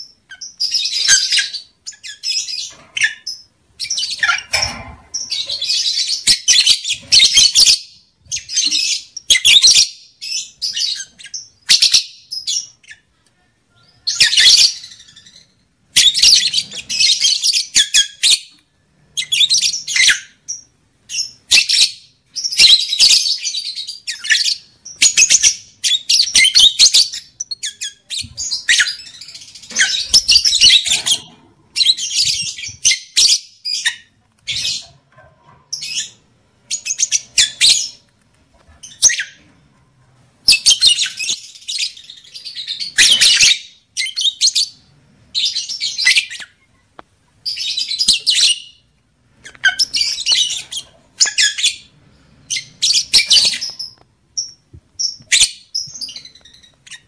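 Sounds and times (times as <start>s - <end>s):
lovebird chattering chirps: 19.2s - 34.9s.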